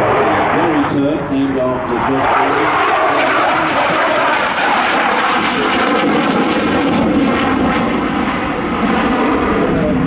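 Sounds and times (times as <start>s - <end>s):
jet engine rush passing: 0.0s - 10.0s.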